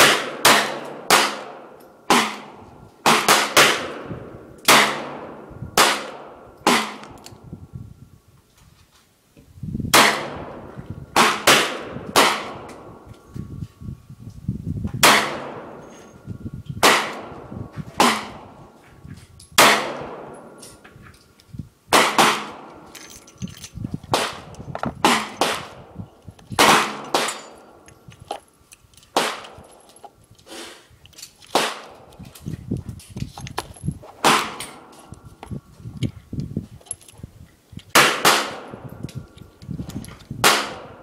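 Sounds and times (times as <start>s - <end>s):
handgun shots with ringing echo: 0.0s - 4.1s, 4.7s - 7.2s, 10.0s - 10.6s, 15.0s - 15.8s, 16.8s - 17.4s, 18.0s - 18.5s, 19.6s - 20.8s, 21.9s - 22.9s, 24.1s - 25.8s, 26.6s - 27.8s, 29.2s - 29.6s, 38.0s - 38.8s, 40.4s - 41.0s.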